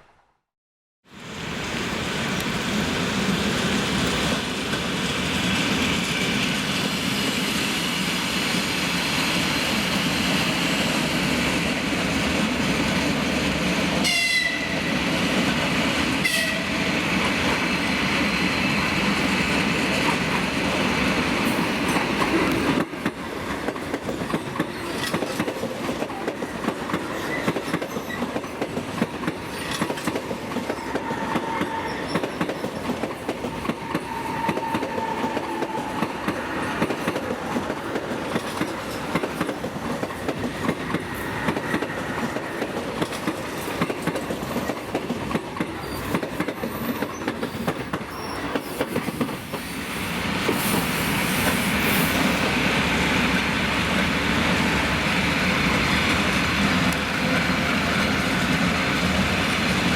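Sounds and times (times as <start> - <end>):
train wheels rumbling and clacking: 1.6 - 59.9
short high train horn toots: 14.0 - 14.8, 16.2 - 16.8, 30.9 - 32.1.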